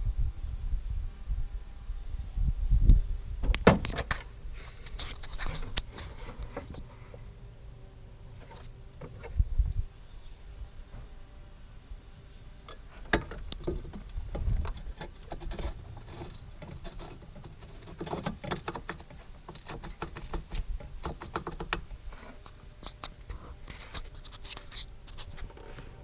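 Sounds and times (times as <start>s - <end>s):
small bird chirping: 8.7s - 20.6s, 22.2s - 23.2s.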